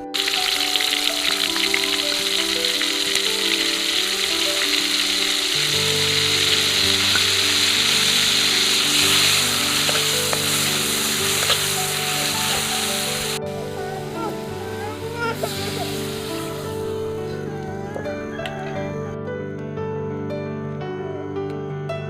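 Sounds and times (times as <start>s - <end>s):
food sizzling in hot oil: 0.0s - 16.8s
piano music: 0.0s - 22.0s.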